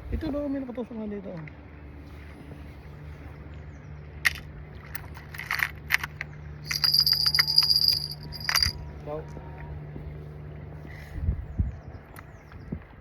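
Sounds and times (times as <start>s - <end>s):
low steady hum: 0.0s - 13.0s
fishing tackle clicks and rattles: 4.2s - 8.8s
reel clicking with high whine: 6.7s - 8.8s.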